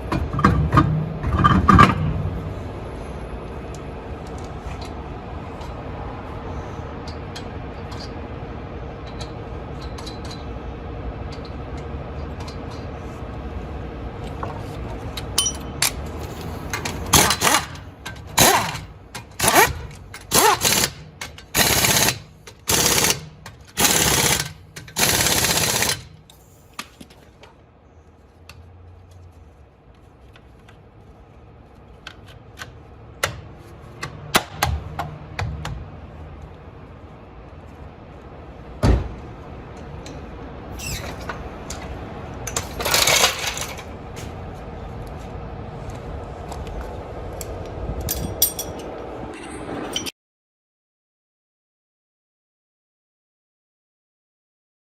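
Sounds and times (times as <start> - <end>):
air impact wrench rattling: 15.9 - 27.0.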